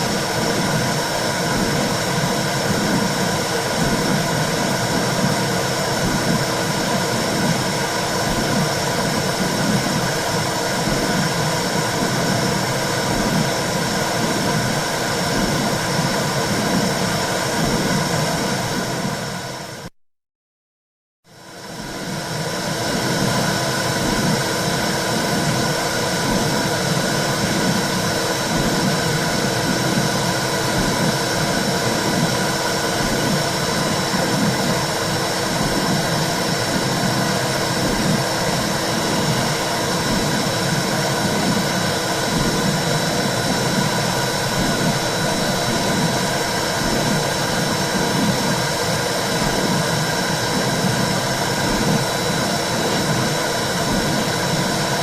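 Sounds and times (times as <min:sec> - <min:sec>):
low rhythmic pulsing: 0:21.5 - 0:55.0.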